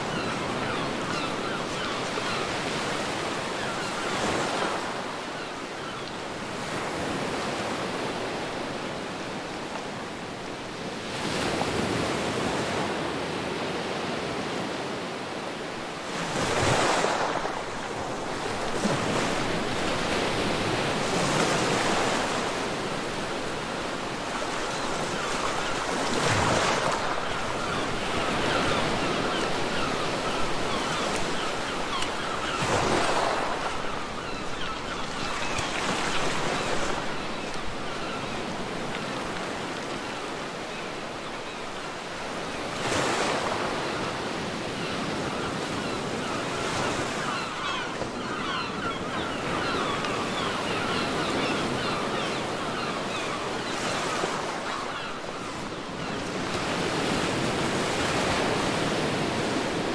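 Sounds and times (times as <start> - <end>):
ocean waves breaking on beach: 0.0 - 59.9.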